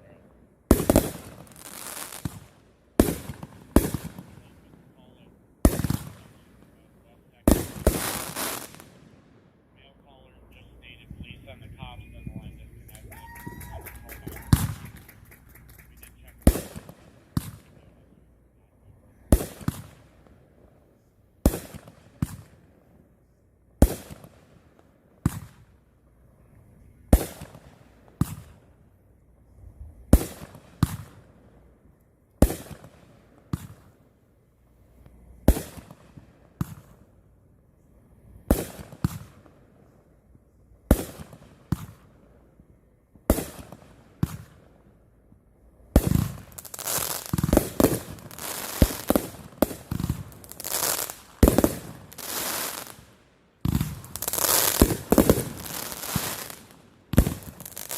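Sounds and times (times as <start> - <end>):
fireworks bangs: 0.0 - 9.2, 9.8 - 18.0, 19.2 - 20.2, 35.4 - 37.0, 38.4 - 39.6, 43.3 - 44.6, 45.9 - 57.9
fireworks crackling: 0.7 - 9.2, 10.2 - 18.0, 45.9 - 57.9.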